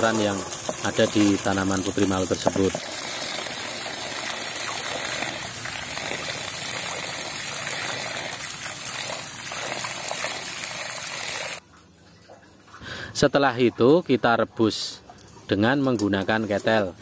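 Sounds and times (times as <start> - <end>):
tap water splashing on leaves: 0.0 - 2.9.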